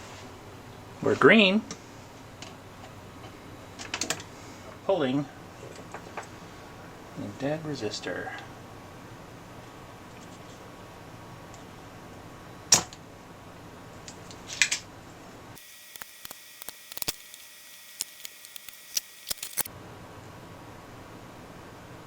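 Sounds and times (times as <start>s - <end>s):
small hand tools clicking: 15.6s - 19.7s.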